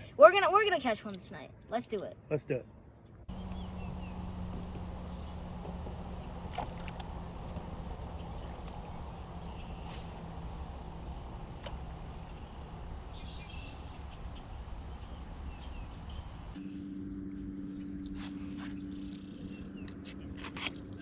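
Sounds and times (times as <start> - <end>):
low engine hum: 3.1 - 21.0
high bird chirps: 12.2 - 16.6.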